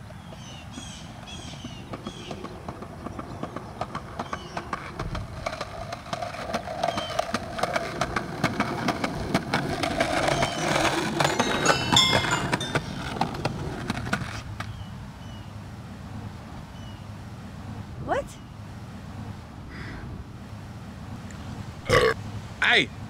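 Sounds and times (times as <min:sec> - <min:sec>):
skateboard wheels rolling on pavement: 0:00.0 - 0:23.0
skateboard clicks over cracks: 0:01.3 - 0:11.3
bird chirps: 0:10.2 - 0:13.2.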